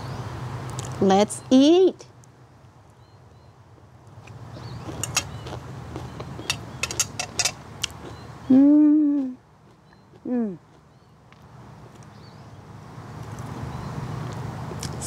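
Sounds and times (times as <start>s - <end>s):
utensils clicking against a dish: 5.0s - 5.3s, 6.4s - 7.6s
person humming mmm: 8.5s - 9.4s, 10.2s - 10.6s.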